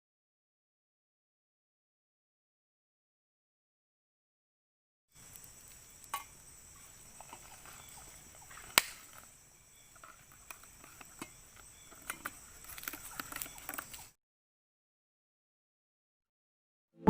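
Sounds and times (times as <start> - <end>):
high insect drone: 5.1 - 14.2.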